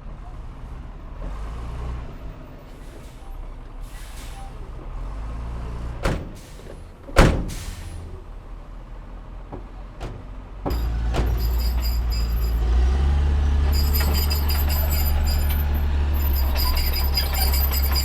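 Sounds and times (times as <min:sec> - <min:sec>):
heavy diesel machinery running: 0:05.8 - 0:18.0.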